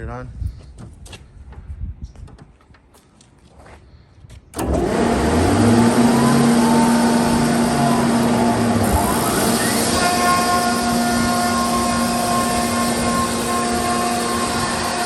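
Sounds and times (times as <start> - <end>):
air compressor running: 4.6 - 15.0
rising whine: 4.6 - 15.0.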